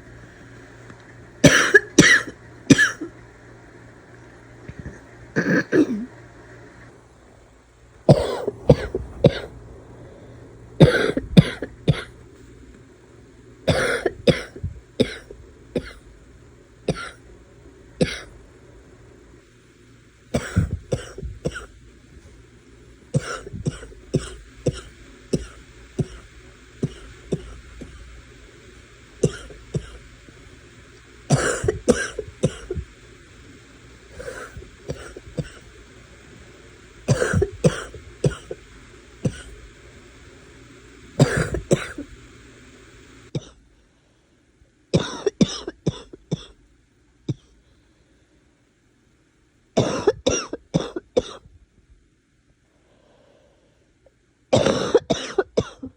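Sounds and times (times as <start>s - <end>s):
person barking cough: 1.4s - 3.1s, 5.4s - 6.1s, 8.1s - 9.5s, 10.8s - 12.1s, 31.3s - 32.8s, 41.2s - 42.0s, 54.6s - 55.9s.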